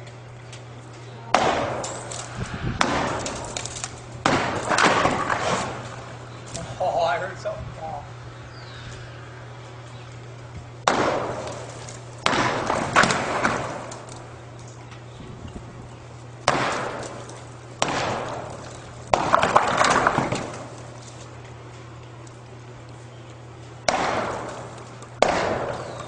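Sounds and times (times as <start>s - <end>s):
sledgehammer blows on a wall: 1.3s - 6.0s, 10.8s - 14.1s, 16.4s - 20.8s, 23.8s - 26.0s.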